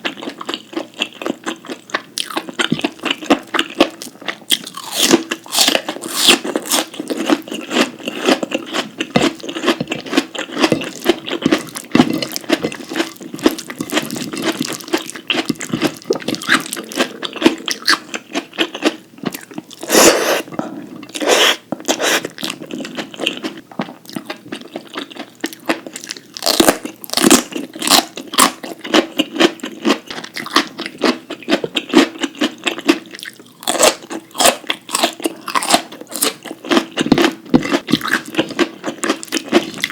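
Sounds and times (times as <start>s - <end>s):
person crunching and chewing food: 0.0s - 39.9s.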